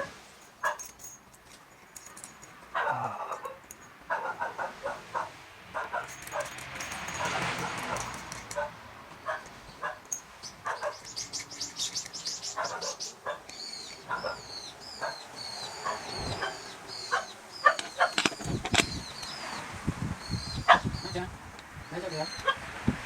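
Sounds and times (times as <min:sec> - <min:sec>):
high ticks: 0:06.0 - 0:19.4
small bird chirping: 0:09.2 - 0:22.6.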